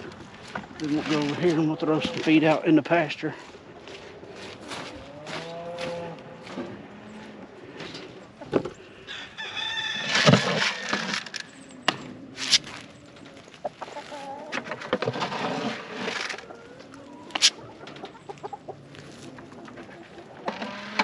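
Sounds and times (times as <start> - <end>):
chickens clucking: 0.0 - 21.0
rooster crowing: 9.0 - 10.9.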